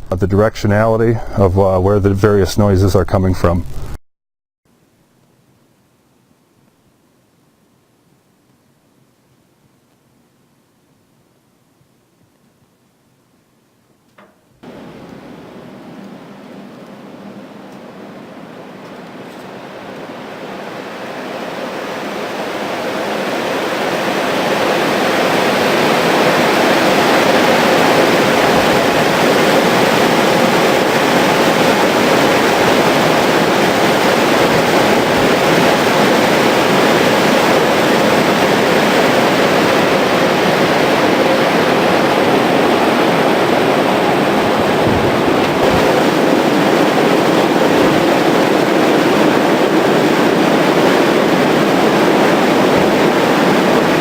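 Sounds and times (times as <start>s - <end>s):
faint steady hum: 0.0s - 3.7s, 4.7s - 54.0s
wind tunnel air rushing: 14.6s - 54.0s.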